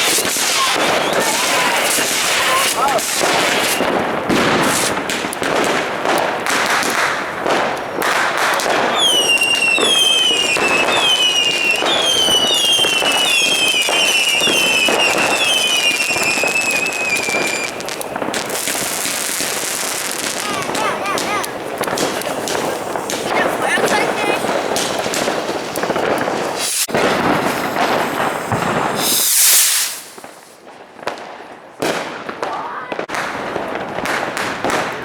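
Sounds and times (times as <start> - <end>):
fireworks whistles sliding down: 0.0 - 5.0, 8.6 - 20.8, 25.3 - 30.6
fireworks bangs and crackling: 0.0 - 35.0.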